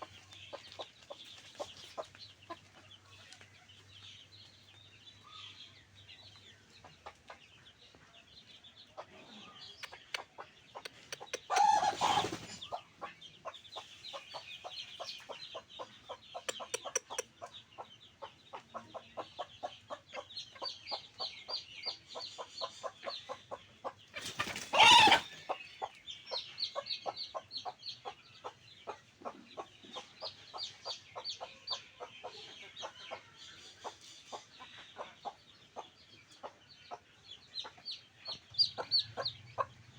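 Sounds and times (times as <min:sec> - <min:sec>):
chickens clucking: 0:00.0 - 0:39.9
loud short chicken calls: 0:11.4 - 0:12.5, 0:24.2 - 0:25.4.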